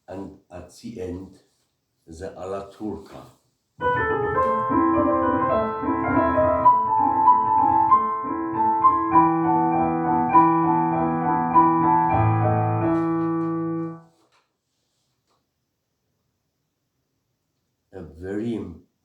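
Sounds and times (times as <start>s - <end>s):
solo piano classical passage: 3.8s - 14.1s.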